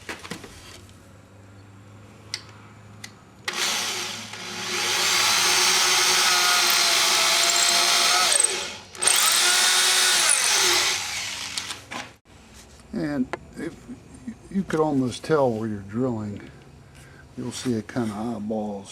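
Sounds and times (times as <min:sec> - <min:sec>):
power drill drilling into wood: 0:03.5 - 0:11.9.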